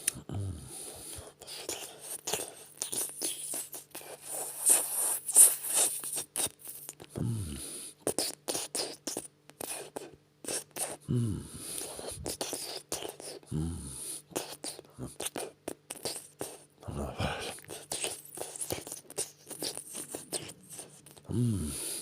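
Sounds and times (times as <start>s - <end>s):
wet licking and slurping: 17.5s - 21.2s.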